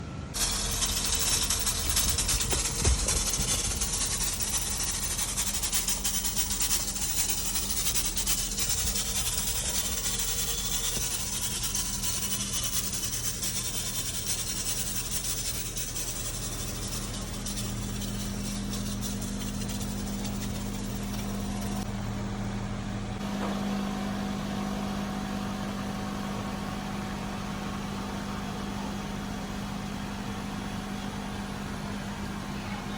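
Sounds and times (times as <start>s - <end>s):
fogging machine motor hum: 0.1s - 28.4s.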